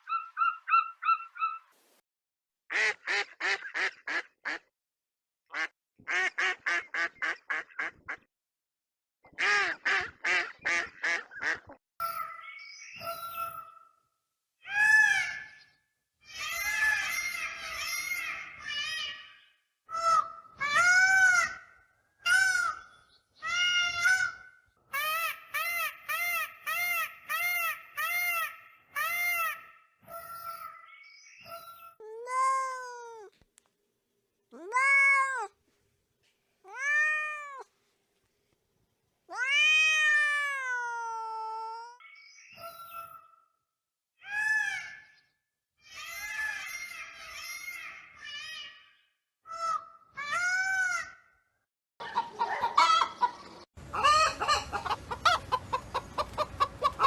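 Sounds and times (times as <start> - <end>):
cat meowing: 34.5 - 35.6, 36.7 - 37.7, 39.3 - 42.0.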